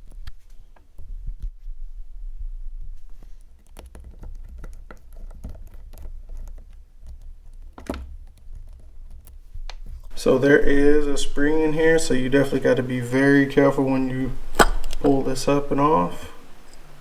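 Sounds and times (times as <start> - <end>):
low hum: 10.1 - 17.0.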